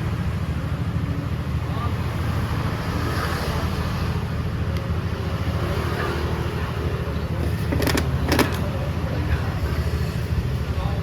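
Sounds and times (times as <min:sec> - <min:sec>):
scooter engine idling: 0:00.0 - 0:11.0
short sharp rattles: 0:07.4 - 0:08.8.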